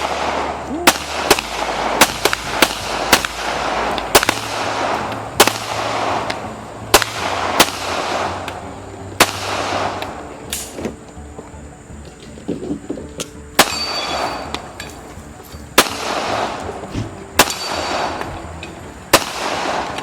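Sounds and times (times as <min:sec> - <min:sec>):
handgun shots with echo: 0:00.0 - 0:08.6, 0:09.2 - 0:10.9, 0:13.6 - 0:15.0, 0:15.8 - 0:18.4, 0:19.1 - 0:20.0.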